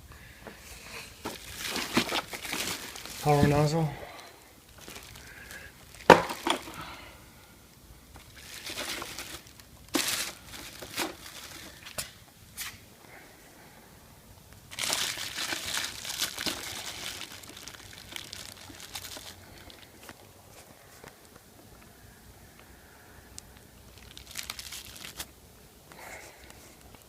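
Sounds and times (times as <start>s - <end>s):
plastic packaging crinkling: 1.2s - 3.9s, 4.6s - 7.0s, 8.1s - 12.2s, 14.7s - 21.2s, 23.3s - 25.4s
plastic parts knocking and clicking: 6.1s - 6.8s.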